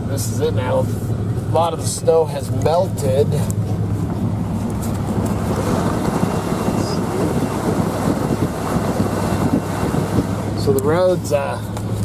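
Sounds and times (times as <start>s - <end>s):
rumbling road noise: 0.0s - 12.0s
vehicle engine drone: 0.0s - 12.0s
wind buffeting microphone: 3.7s - 11.0s.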